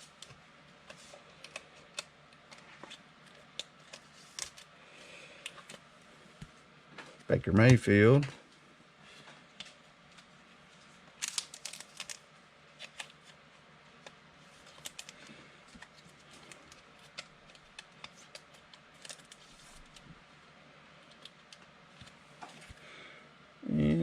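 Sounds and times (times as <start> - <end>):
trading cards clicking and snapping: 0.2 - 4.7, 11.2 - 12.2, 12.8 - 13.4, 14.0 - 20.0.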